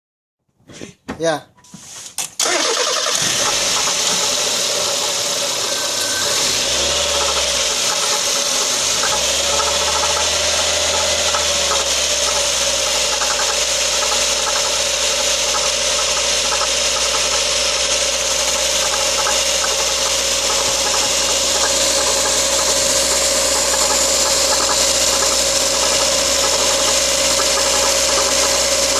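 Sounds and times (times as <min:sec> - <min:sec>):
steady whine: 0:03.0 - 0:28.9
car engine knocking: 0:03.1 - 0:28.9.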